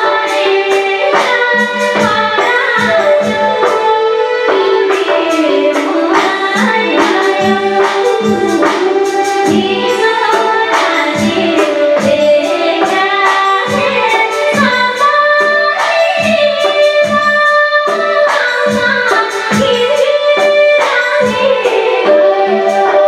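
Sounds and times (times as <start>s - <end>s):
instrumental backing: 0.0s - 23.0s
woman singing: 0.0s - 23.0s
drum beat: 5.0s - 17.5s.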